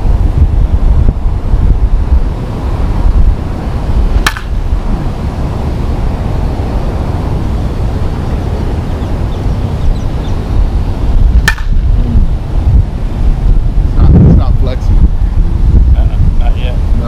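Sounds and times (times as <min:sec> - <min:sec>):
wind buffeting microphone: 0:00.0 - 0:17.0
bat striking softball: 0:04.1 - 0:04.7, 0:11.4 - 0:11.9.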